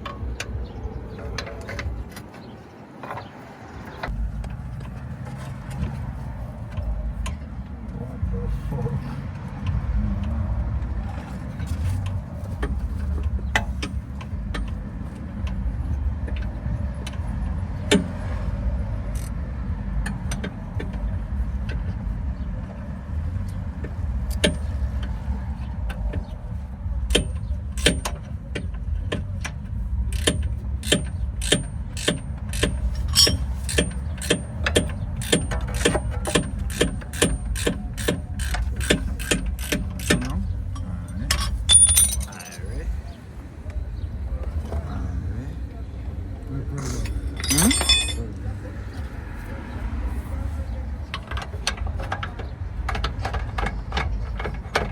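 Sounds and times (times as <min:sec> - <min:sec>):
low steady rumble: 0:04.1 - 0:48.8
metallic clicks of hand tools: 0:30.1 - 0:42.6, 0:46.9 - 0:48.2.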